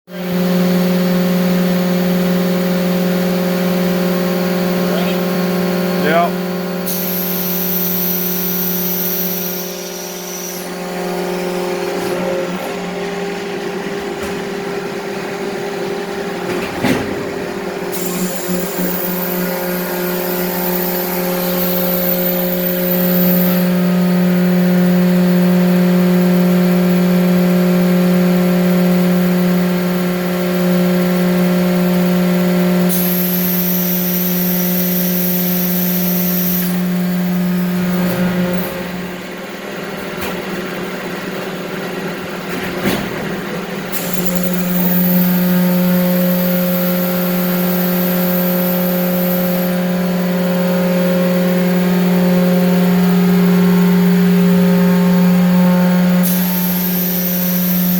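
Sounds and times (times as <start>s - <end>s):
high machine whine: 0.2s - 16.3s, 17.4s - 40.1s, 43.5s - 57.9s
machine hum: 36.3s - 57.9s.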